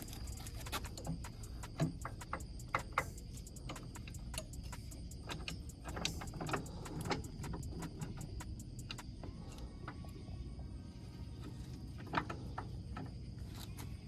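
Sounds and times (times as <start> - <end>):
faint fast ticking: 0.0 - 9.9
light clicks and metallic clinks: 0.0 - 10.2
low steady rumble: 0.0 - 14.0.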